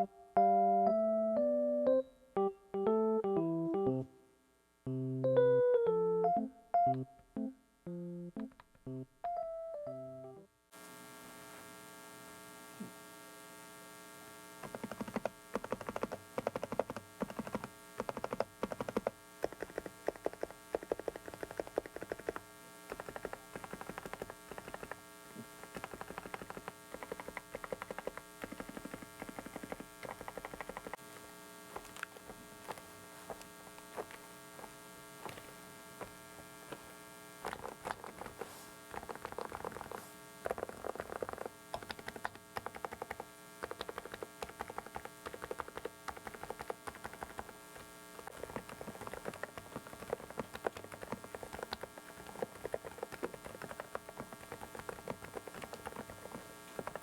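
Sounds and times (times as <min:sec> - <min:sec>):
electrical hum and whine: 0:02.6 - 0:57.0.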